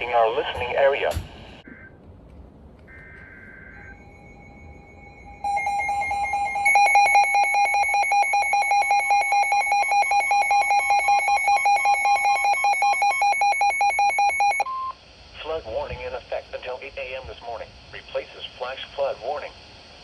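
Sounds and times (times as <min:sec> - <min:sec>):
steady electronic tones: 0:02.8 - 0:14.7
buzzing data tones: 0:02.9 - 0:14.6
rapidly pulsing alarm beep: 0:02.9 - 0:14.9.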